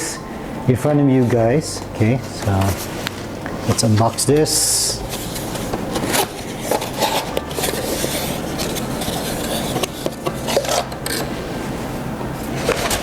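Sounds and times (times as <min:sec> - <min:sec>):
box rubbing and scraping: 0:02.0 - 0:11.8.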